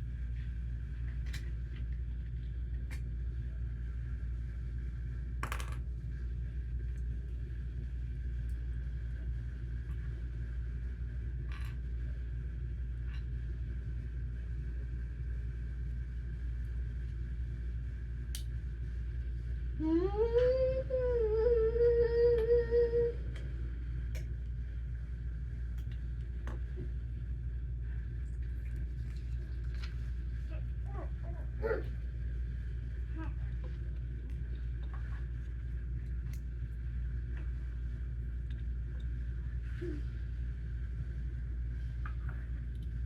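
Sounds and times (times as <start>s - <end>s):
low background hum: 0.0s - 43.0s
person humming: 19.8s - 23.4s.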